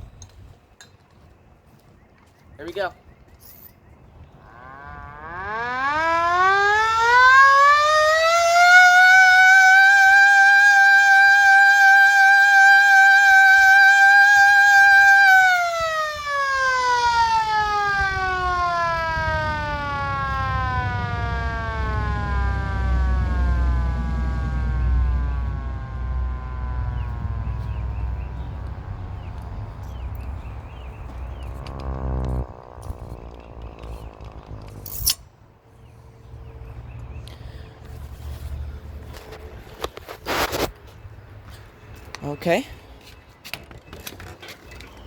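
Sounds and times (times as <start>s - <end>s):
hand-crank siren wailing: 4.5s - 35.0s
low rumble: 17.8s - 39.6s.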